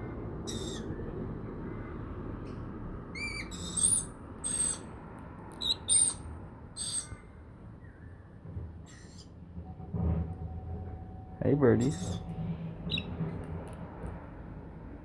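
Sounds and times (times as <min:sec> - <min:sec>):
lorikeets screeching: 0:00.5 - 0:01.0, 0:03.2 - 0:04.9, 0:05.6 - 0:06.2, 0:06.8 - 0:07.3, 0:11.8 - 0:12.3, 0:12.9 - 0:13.2
low steady rumble: 0:07.8 - 0:15.0.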